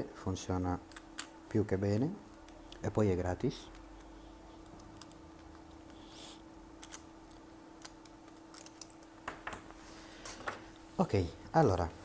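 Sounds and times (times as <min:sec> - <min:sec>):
electrical hum: 0:00.0 - 0:12.0.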